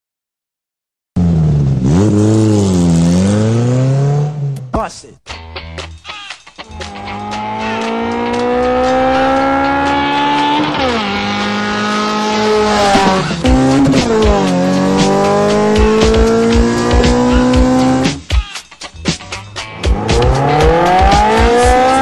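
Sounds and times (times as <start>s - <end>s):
car engine revving through gears: 1.2s - 4.7s, 6.8s - 18.2s, 19.8s - 22.0s.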